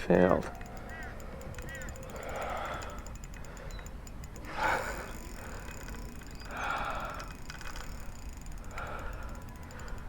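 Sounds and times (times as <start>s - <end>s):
fishing reel clicking: 0.0s - 10.0s
person breathing hard: 2.0s - 10.0s.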